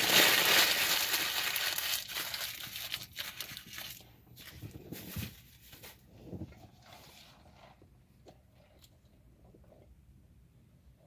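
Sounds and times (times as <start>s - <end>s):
wrapper paper crinkling: 0.0s - 6.0s
soft handling sounds: 2.6s - 9.9s.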